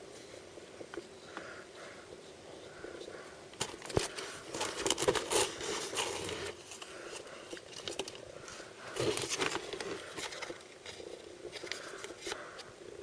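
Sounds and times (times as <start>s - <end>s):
toy packaging crinkling: 3.6s - 6.6s, 9.0s - 12.4s.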